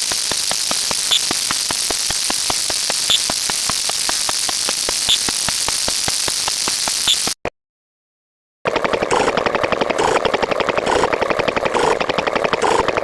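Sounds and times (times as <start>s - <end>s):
fast even ticking: 0.0s - 7.4s
louder ticking: 0.0s - 7.4s
steady hiss: 0.0s - 7.4s.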